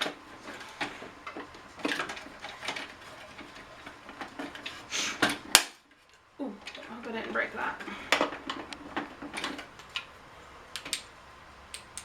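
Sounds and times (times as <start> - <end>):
plastic parts clicking and rattling: 0.0 - 5.8, 7.7 - 10.1.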